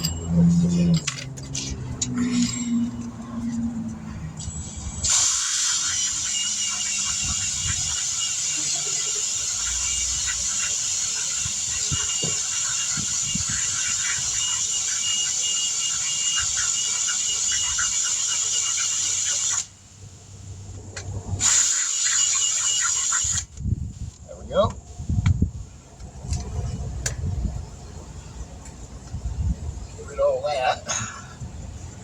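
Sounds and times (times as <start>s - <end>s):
air tool high-pitched whine: 4.4s - 20.6s, 21.4s - 23.6s.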